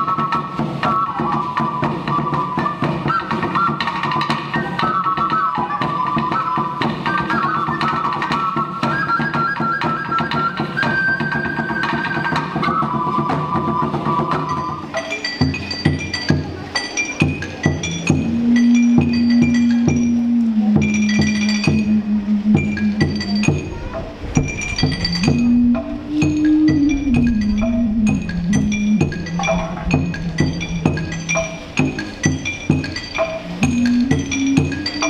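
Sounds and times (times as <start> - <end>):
flute melody: 0.0 - 35.0
steady percussion: 0.0 - 35.0
low sustained tones: 14.7 - 35.0.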